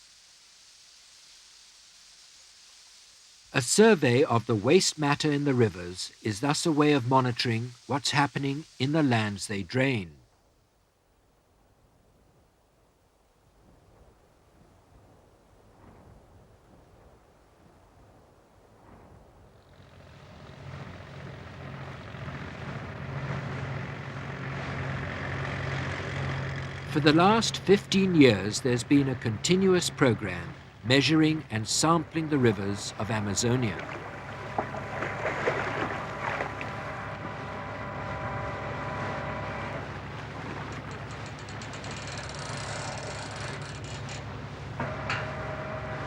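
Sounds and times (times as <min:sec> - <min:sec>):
high whine: 0:00.0 - 0:10.2, 0:19.6 - 0:46.0
motor engine humming: 0:19.6 - 0:46.0.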